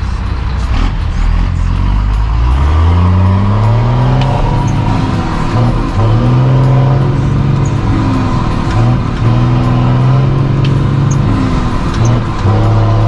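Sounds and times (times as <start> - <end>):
diesel truck engine revving: 0.0 - 13.0.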